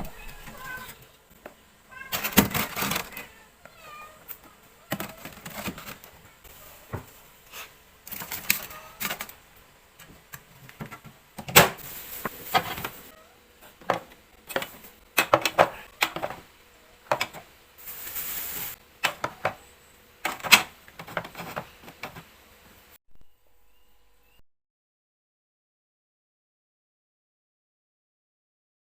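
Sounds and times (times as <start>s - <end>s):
food containers clattering: 2.0s - 3.3s, 4.9s - 6.3s, 8.0s - 9.4s, 10.0s - 19.6s, 20.2s - 22.3s.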